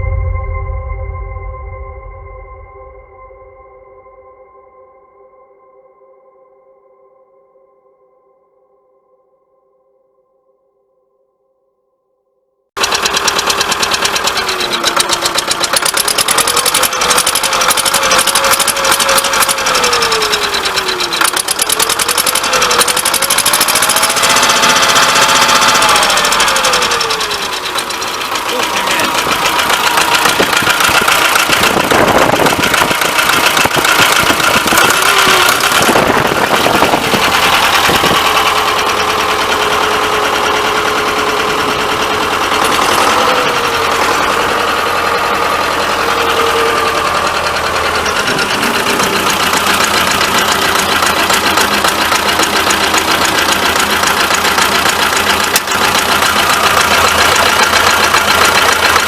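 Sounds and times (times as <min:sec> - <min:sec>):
tractor diesel engine clattering: 0:12.8 - 0:59.0.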